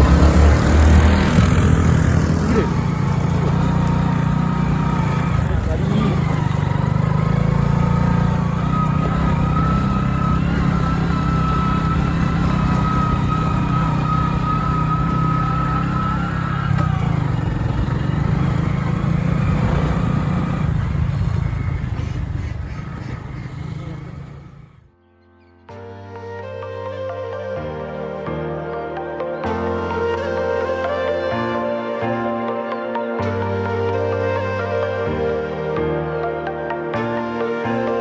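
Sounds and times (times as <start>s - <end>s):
motorcycle engine running: 0.0s - 24.9s.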